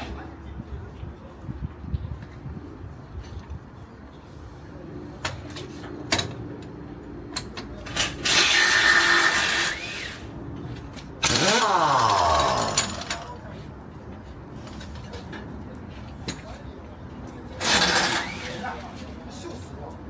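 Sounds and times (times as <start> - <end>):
impact wrench running: 11.2 - 13.3, 17.6 - 18.6.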